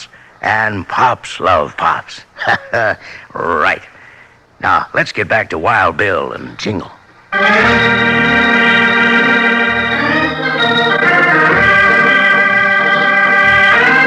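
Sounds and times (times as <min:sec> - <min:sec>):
organ chords: 0:07.1 - 0:14.0.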